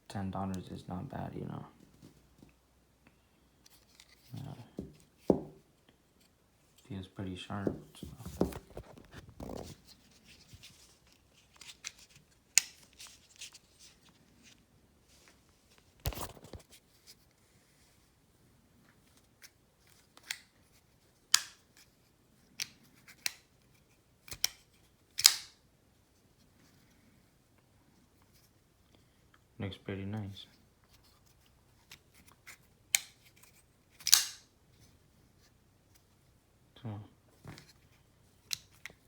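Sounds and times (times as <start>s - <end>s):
pocket knife clicking: 25.2s - 25.5s, 34.0s - 34.4s
short snipping sounds: 34.0s - 34.4s.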